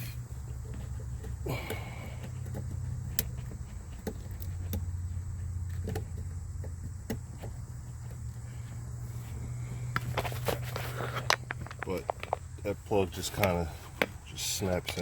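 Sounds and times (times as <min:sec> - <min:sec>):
plastic parts clicking and knocking: 0:00.5 - 0:04.9, 0:11.2 - 0:12.4.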